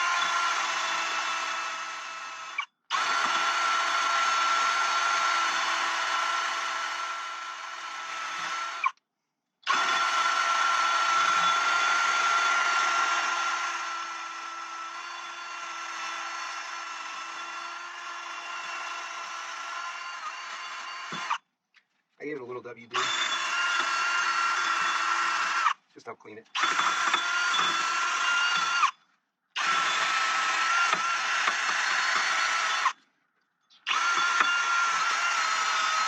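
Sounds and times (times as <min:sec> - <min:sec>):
electric drill with brush whining: 0:00.0 - 0:09.0, 0:09.6 - 0:21.4, 0:23.0 - 0:25.8, 0:26.6 - 0:29.0, 0:29.6 - 0:33.0, 0:33.8 - 0:36.0.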